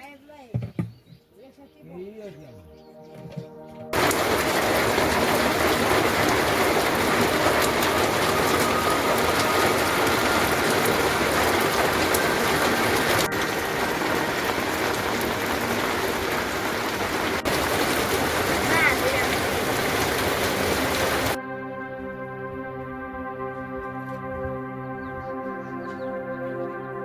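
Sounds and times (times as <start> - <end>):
steady rain falling: 3.9 - 21.4.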